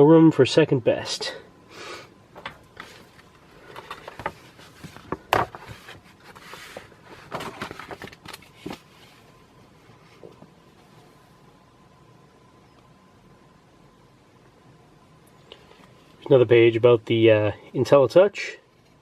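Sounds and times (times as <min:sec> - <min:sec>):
paper pages rustling: 0:02.8 - 0:09.3.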